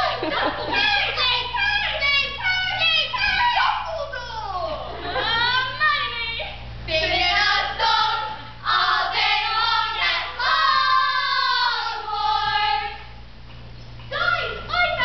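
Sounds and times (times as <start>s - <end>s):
young voices singing a cappella: 6.9s - 13.2s.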